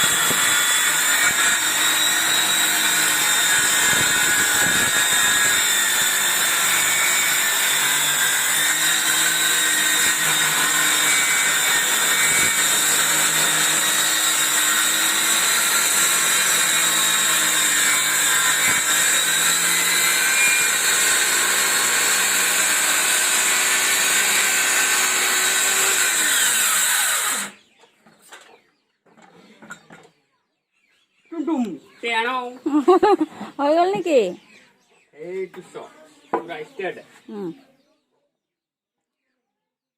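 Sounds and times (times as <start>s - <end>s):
electric saw cutting wood: 0.0s - 27.6s.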